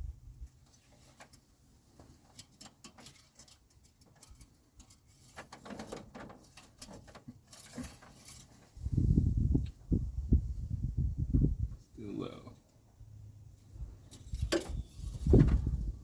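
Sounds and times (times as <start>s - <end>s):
rustling and scraping: 0.3s - 10.7s, 13.6s - 16.0s.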